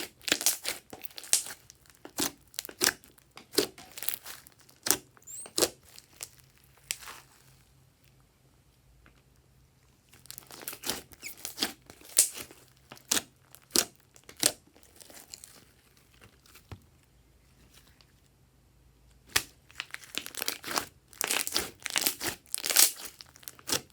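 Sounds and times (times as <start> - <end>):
slime crackling and popping: 0.0 - 7.6, 10.1 - 16.6, 19.3 - 23.9.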